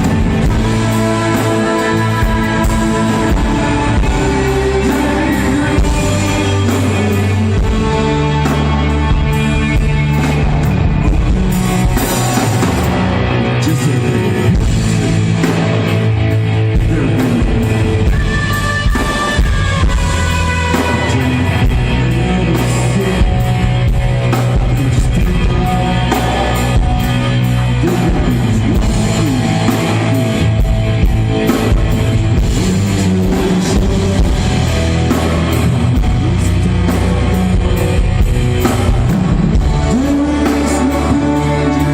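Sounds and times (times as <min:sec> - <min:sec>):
rock band playing: 0:00.0 - 0:41.9.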